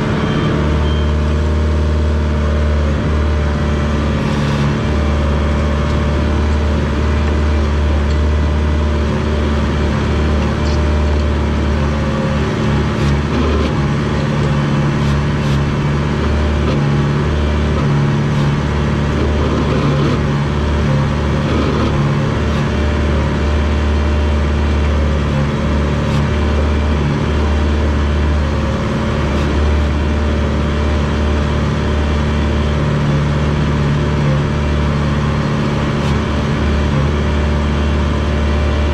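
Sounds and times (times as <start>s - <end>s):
bulldozer diesel engine drone: 0.0s - 38.9s.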